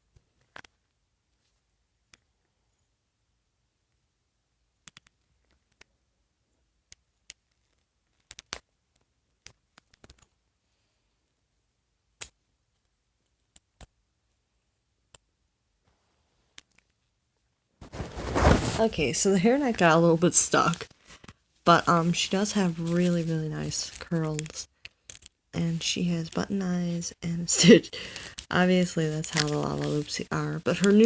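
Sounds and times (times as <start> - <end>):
small clicks and snaps: 0.1 - 1.0, 4.8 - 6.0, 6.8 - 10.4, 12.2 - 14.0, 15.1 - 15.3, 16.5 - 17.0, 23.8 - 25.4.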